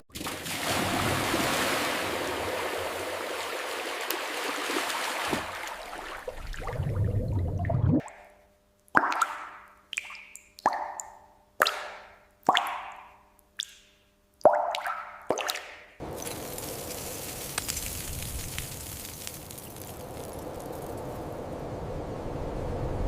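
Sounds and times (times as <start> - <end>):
plopping water drop effects: 6.3 - 8.4, 9.0 - 13.8, 14.4 - 15.9
rustling hiss: 16.0 - 21.7.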